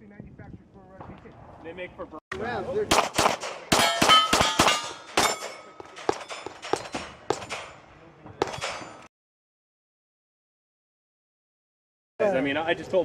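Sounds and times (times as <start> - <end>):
bullets clanging on steel plates: 2.9 - 7.8, 8.4 - 9.1
pistol shots: 2.9 - 7.8.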